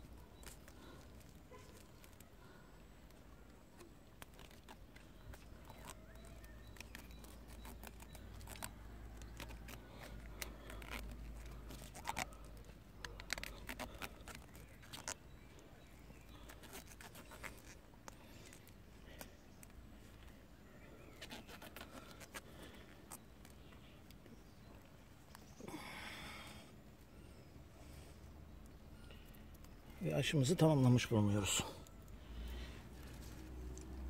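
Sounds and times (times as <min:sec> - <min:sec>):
plastic tape crinkling: 0:00.0 - 0:20.3, 0:21.1 - 0:24.3.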